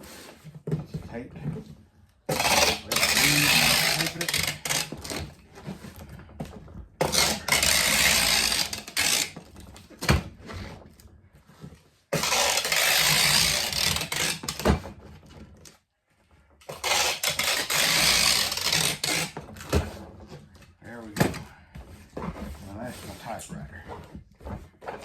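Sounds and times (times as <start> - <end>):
packing tape tearing off roll: 2.3 - 5.4, 7.0 - 10.7, 12.1 - 15.0, 16.6 - 20.1.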